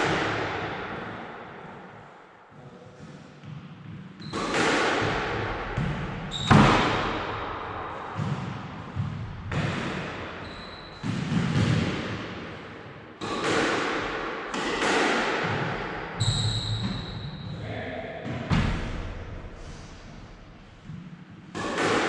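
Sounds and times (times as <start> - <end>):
squash ball hits echoing: 0.0 - 2.1, 3.4 - 19.6, 20.9 - 22.0
sneaker squeaking on court: 3.4 - 4.7, 5.8 - 7.2, 8.2 - 11.9, 16.2 - 17.6.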